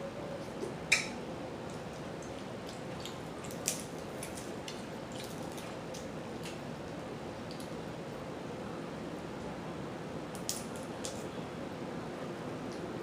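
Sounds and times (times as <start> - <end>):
wet eating clicks and squishes: 0.9 - 7.8, 10.3 - 11.2.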